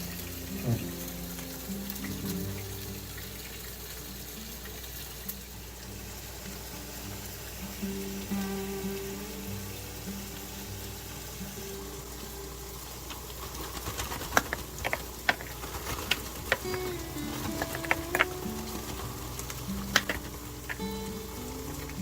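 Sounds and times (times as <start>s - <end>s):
soft background music: 0.0s - 22.0s
sharp clicks and taps: 13.9s - 22.0s.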